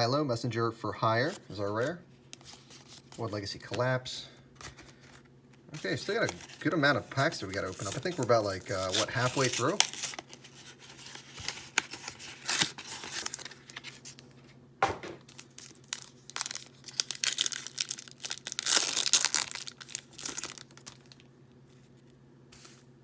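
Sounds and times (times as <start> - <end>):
foil wrapper crinkling: 1.2 - 3.9, 4.6 - 14.5, 15.2 - 22.0
foil pack tearing: 5.8 - 14.1, 15.2 - 21.2.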